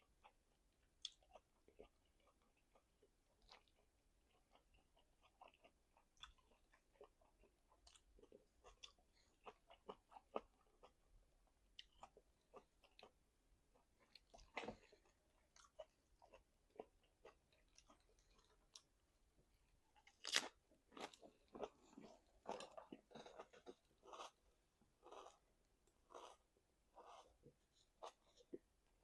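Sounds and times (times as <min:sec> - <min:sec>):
wet chewing and mouth smacks: 0:00.2 - 0:11.0.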